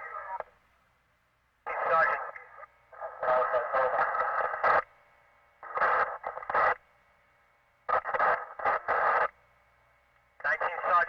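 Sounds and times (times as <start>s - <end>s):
radio chatter through small speaker: 0.0s - 0.5s, 1.7s - 4.8s, 5.6s - 6.8s, 7.9s - 9.3s, 10.4s - 11.0s.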